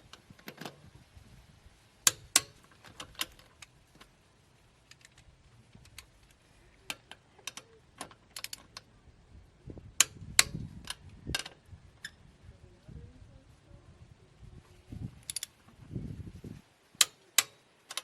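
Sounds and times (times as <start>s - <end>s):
wrench clicking on lug nuts: 2.0s - 3.7s, 6.9s - 8.8s, 15.2s - 15.5s, 17.0s - 18.0s.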